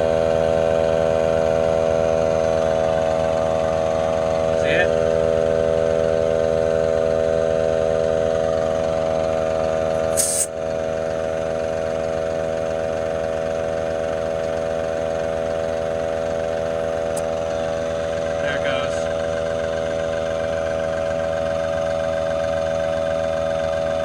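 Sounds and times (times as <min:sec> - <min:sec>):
air compressor humming: 0:00.0 - 0:24.0
tractor engine running: 0:00.0 - 0:24.0
sharp air hiss: 0:10.1 - 0:10.5.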